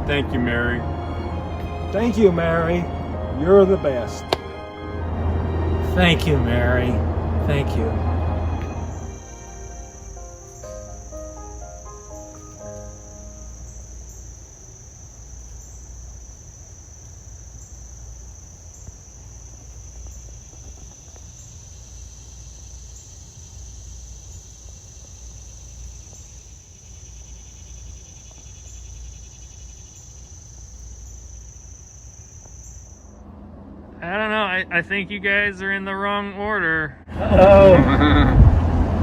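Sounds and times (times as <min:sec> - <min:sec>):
low rumble: 0:00.0 - 0:11.6, 0:37.0 - 0:39.0
faint pulsing trill: 0:00.0 - 0:15.7
crickets trilling: 0:08.7 - 0:33.3.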